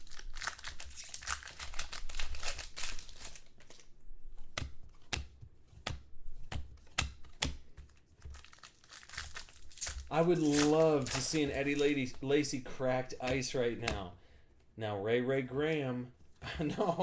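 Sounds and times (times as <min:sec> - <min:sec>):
foil wrapper crinkling and tearing: 0:00.0 - 0:03.9, 0:08.2 - 0:12.6
cards clicking as flipped: 0:00.5 - 0:12.2.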